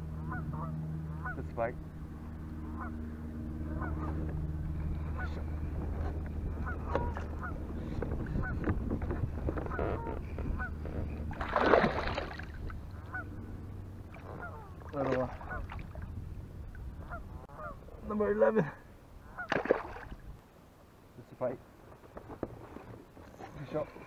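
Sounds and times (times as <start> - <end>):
low hum: 0.0 - 21.2
geese honking: 0.2 - 1.5, 2.6 - 4.3, 4.9 - 5.5, 6.5 - 8.6, 9.6 - 11.2, 12.9 - 13.5, 14.2 - 15.7, 17.0 - 17.9, 19.2 - 19.5.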